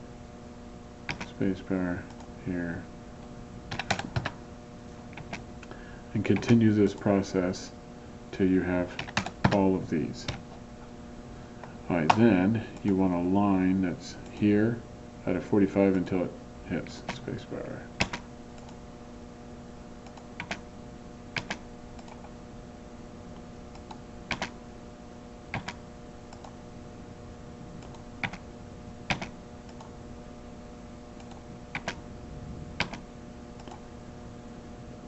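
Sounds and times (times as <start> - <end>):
steady hum: 0.0 - 35.0
keyboard and mouse clicks: 1.1 - 1.3, 3.7 - 4.4, 5.1 - 5.4, 9.0 - 9.6, 18.0 - 18.8, 20.0 - 20.6, 21.4 - 22.3, 23.7 - 24.6, 25.5 - 26.6, 27.8 - 28.4, 29.1 - 29.9, 31.2 - 32.0, 32.8 - 33.0, 33.6 - 33.8.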